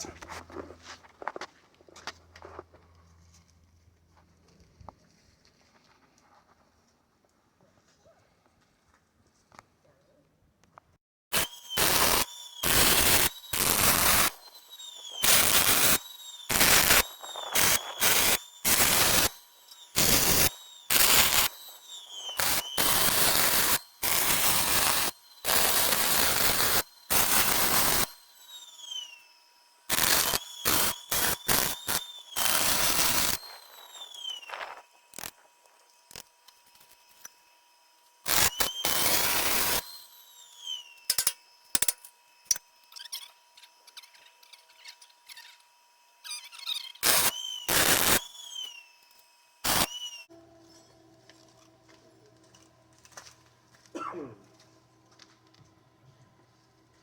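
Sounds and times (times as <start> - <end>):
arc welding crackling: 11.3 - 50.3
welder whine: 11.3 - 57.0.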